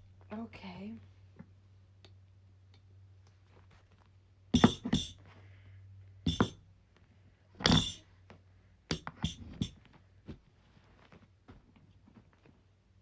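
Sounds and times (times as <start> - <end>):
chair parts knocking and clunking: 4.6 - 5.2, 6.3 - 6.6, 7.6 - 8.0, 8.9 - 9.9.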